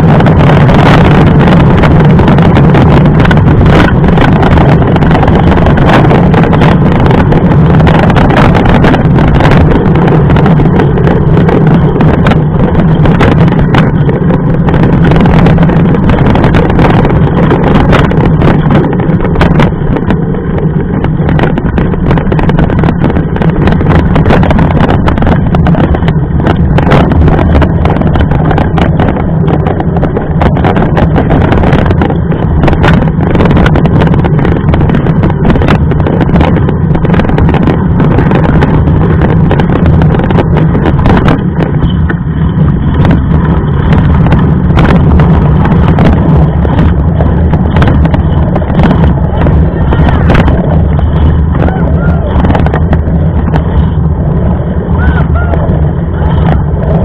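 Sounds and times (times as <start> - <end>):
mountain bike riding rumble: 0.0 - 57.0.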